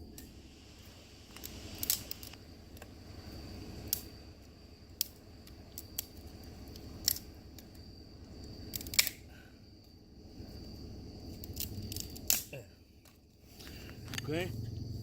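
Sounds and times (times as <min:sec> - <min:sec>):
background hiss: 0:00.0 - 0:15.0.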